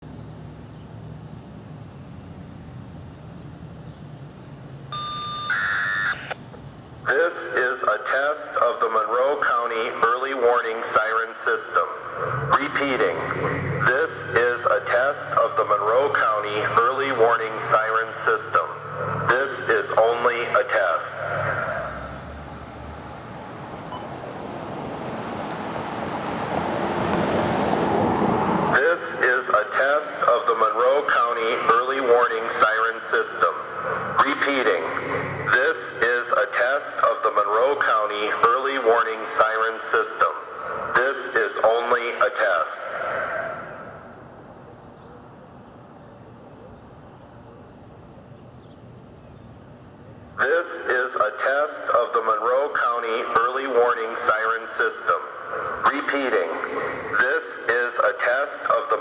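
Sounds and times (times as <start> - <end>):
electronic siren alert tone: 4.9 - 6.4
outdoor rushing noise: 11.6 - 31.7, 40.0 - 45.4.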